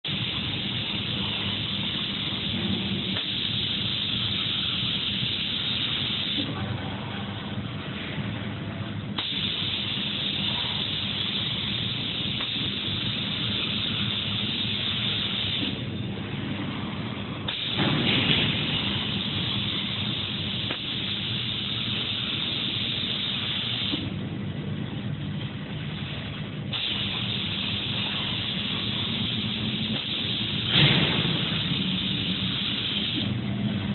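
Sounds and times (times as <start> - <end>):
low machine hum: 0.0 - 33.9
spray gun hissing: 0.1 - 6.4, 9.2 - 15.8, 17.5 - 24.1, 26.7 - 33.3.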